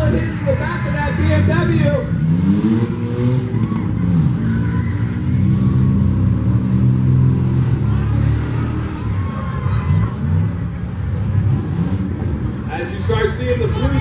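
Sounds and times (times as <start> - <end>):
car engines revving hard: 0.0 - 14.0.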